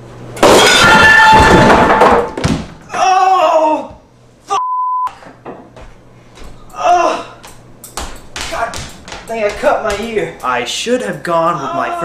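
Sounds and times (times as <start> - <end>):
ceiling fan crash and clatter: 0.3 - 3.0
man crying out: 2.9 - 4.6, 6.7 - 7.4, 11.4 - 12.0.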